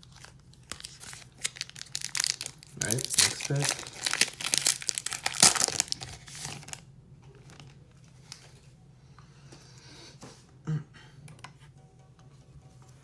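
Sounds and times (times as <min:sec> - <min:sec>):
foil wrapper crinkling: 0:00.0 - 0:06.8.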